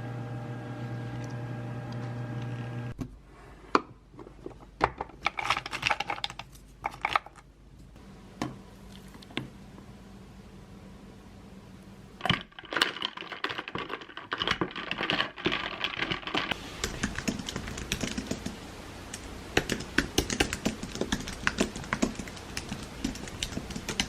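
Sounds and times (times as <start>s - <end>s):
computer keyboard typing: 13.3s - 18.6s, 19.6s - 24.0s.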